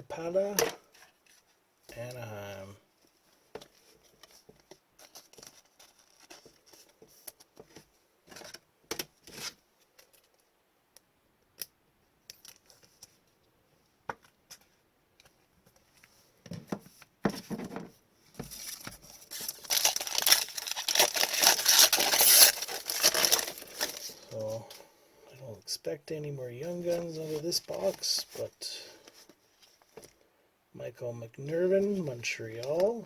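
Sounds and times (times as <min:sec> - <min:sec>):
trading cards being handled: 0:18.5 - 0:24.7
card pack wrapper tearing and crinkling: 0:18.6 - 0:24.6.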